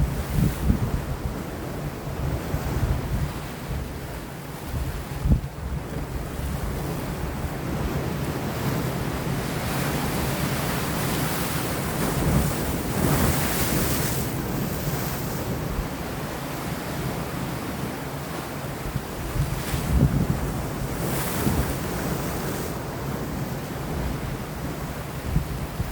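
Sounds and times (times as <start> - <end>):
wind buffeting microphone: 0.0 - 17.5, 18.8 - 25.9
sea waves breaking on rocks: 6.2 - 25.9.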